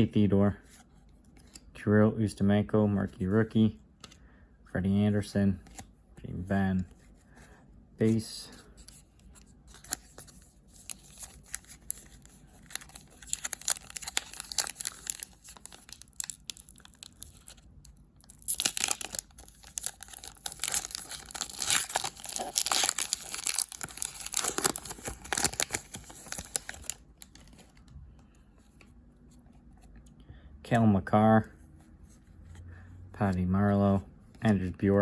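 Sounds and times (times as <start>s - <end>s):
foil wrapper tearing and crinkling: 10.8s - 17.6s, 18.2s - 27.7s.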